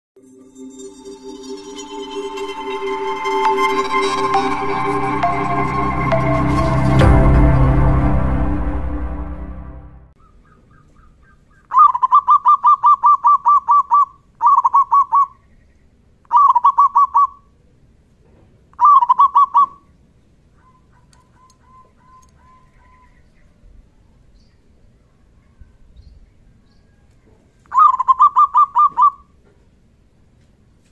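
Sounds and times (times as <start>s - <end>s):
music: 0.2s - 10.2s
dove cooing: 20.6s - 23.2s.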